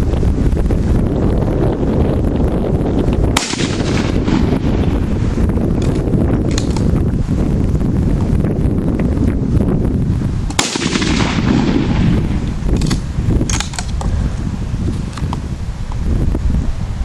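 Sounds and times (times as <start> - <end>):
wind buffeting microphone: 0.0 - 17.0
rifle shot: 3.3 - 4.7, 10.5 - 14.0
sharp explosion blast with echo: 3.3 - 5.3, 10.5 - 12.8.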